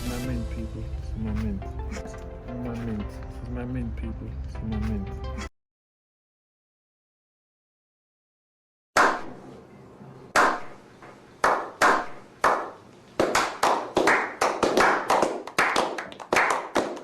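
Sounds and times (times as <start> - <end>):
sharp hand claps with echo: 11.4 - 17.0.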